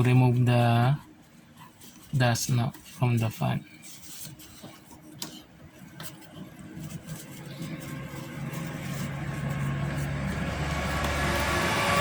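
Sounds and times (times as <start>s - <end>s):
tissue wiping plastic fan blades: 0.0s - 12.0s
engine hum: 6.6s - 12.0s.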